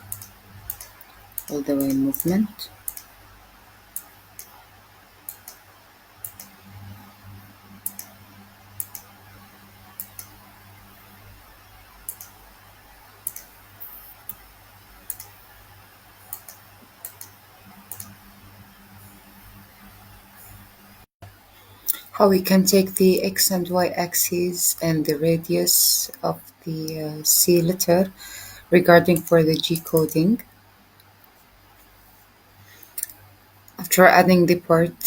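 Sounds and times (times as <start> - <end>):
faint low hum: 0.0 - 35.0
computer mouse clicking: 0.1 - 3.1, 3.9 - 4.6, 5.2 - 6.6, 7.8 - 8.2, 8.8 - 9.4, 10.0 - 10.4, 12.0 - 12.4, 13.2 - 14.4, 15.0 - 15.4, 16.3 - 18.2.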